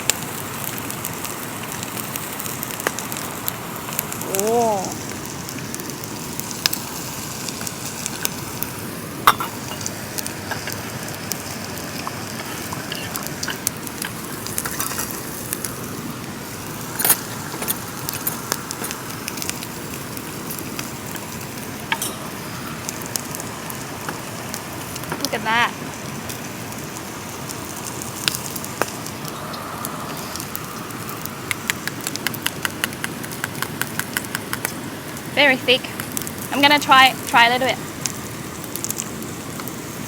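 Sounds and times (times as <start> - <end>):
meat sizzling: 0.0 - 40.0
steady rain: 0.0 - 40.0
utensils clinking: 9.2 - 9.9, 12.3 - 15.2, 16.8 - 19.0, 21.8 - 22.5.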